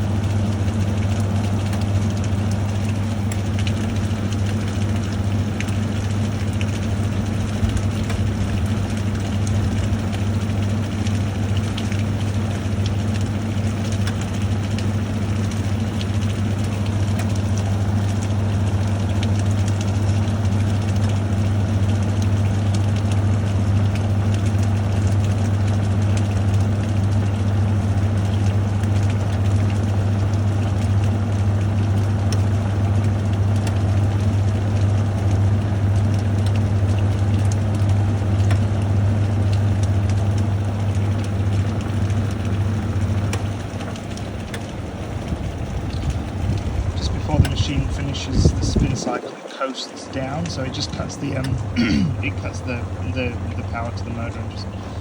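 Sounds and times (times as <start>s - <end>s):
washing machine spinning: 0.0s - 55.0s.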